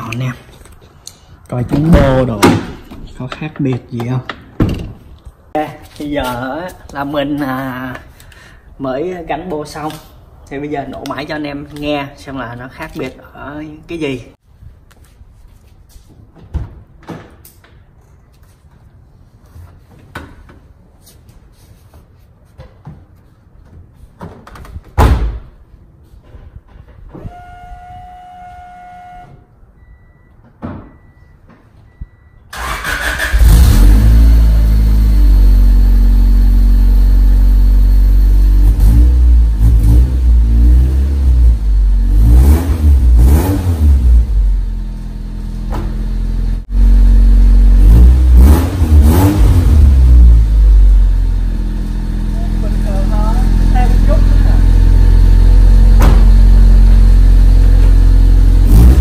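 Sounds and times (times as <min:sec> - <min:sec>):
thump: 0:01.8 - 0:03.0, 0:04.3 - 0:05.0, 0:25.0 - 0:25.5, 0:45.7 - 0:46.0, 0:56.0 - 0:56.5
car engine starting and revving: 0:32.5 - 0:59.0.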